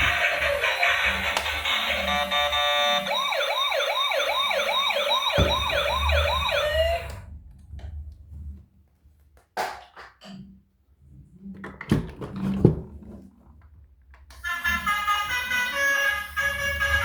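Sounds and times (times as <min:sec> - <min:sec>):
electronic toy siren wailing: 0:00.0 - 0:07.2, 0:14.4 - 0:17.0.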